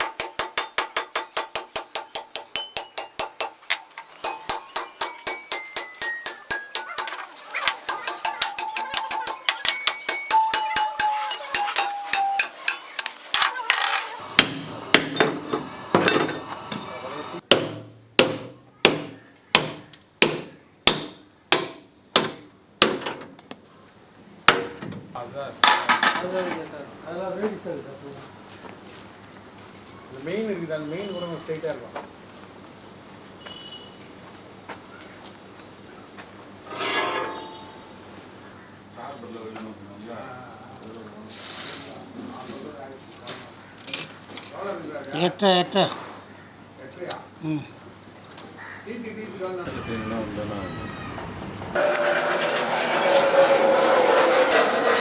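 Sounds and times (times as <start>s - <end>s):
hammer striking steel: 0.0s - 23.3s.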